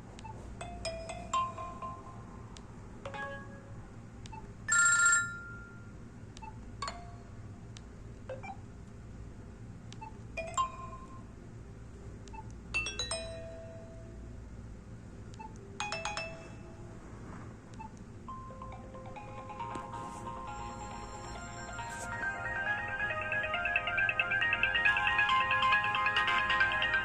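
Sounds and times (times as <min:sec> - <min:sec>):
chime-like phone ringtone: 0:04.7 - 0:05.8, 0:15.8 - 0:16.8, 0:18.3 - 0:27.0.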